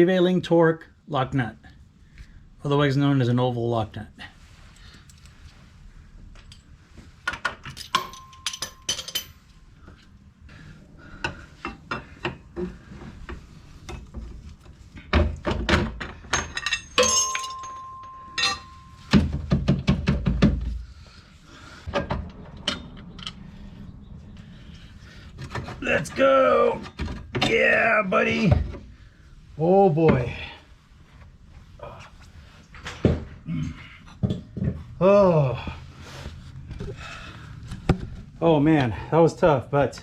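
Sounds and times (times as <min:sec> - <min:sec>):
steel tools clinking and knocking: 0:07.3 - 0:09.6, 0:15.8 - 0:20.5
short metallic rings: 0:07.8 - 0:09.5, 0:16.3 - 0:19.2.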